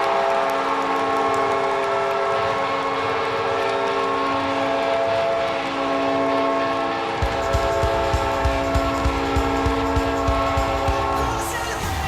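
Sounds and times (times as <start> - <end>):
hockey goal horn: 0.0 - 11.8
low thumping beat: 7.2 - 12.0.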